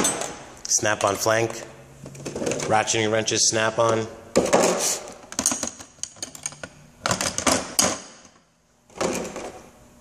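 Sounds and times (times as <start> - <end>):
tools rattling in drawers: 0.0 - 0.4, 4.4 - 9.6.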